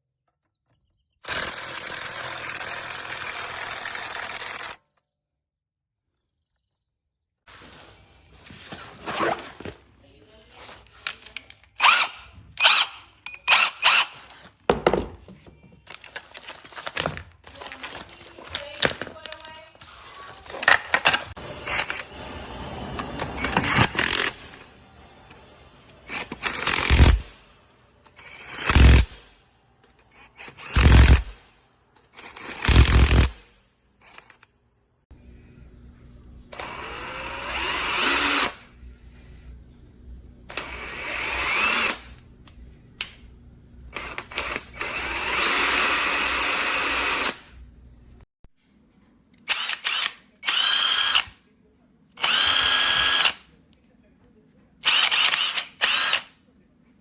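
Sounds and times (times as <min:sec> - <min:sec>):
cordless impact wrench running: 0:01.3 - 0:04.8, 0:11.8 - 0:15.2, 0:28.3 - 0:29.1, 0:30.4 - 0:31.3, 0:32.2 - 0:33.3, 0:36.6 - 0:38.7, 0:40.5 - 0:42.3, 0:43.9 - 0:47.5, 0:49.5 - 0:51.3, 0:52.2 - 0:53.4, 0:54.8 - 0:56.3.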